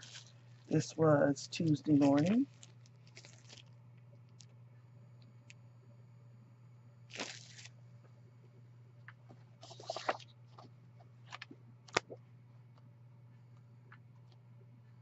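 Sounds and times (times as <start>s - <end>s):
plastic packaging crinkling and tearing: 0.0s - 0.8s, 1.9s - 4.4s, 7.1s - 7.7s, 9.6s - 10.3s
steady low hum: 0.0s - 15.0s.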